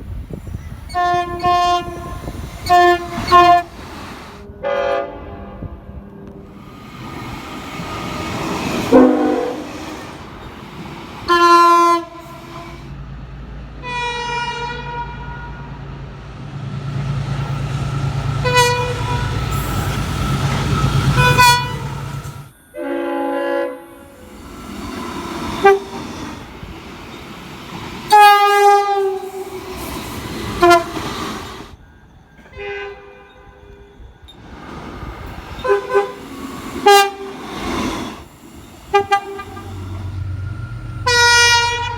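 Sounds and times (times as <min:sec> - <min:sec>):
passing train rumble: 0:00.0 - 0:41.9
locomotive air horns: 0:00.9 - 0:06.8, 0:07.8 - 0:10.3, 0:11.1 - 0:12.9, 0:13.8 - 0:15.8, 0:17.8 - 0:26.7, 0:28.0 - 0:31.8, 0:35.6 - 0:40.4, 0:41.0 - 0:41.9.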